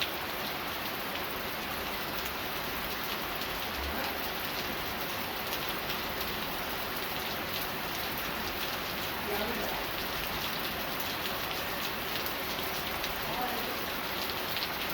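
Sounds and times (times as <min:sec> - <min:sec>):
steady rain hiss: 0:00.0 - 0:14.9
raindrop ticks: 0:03.0 - 0:13.6.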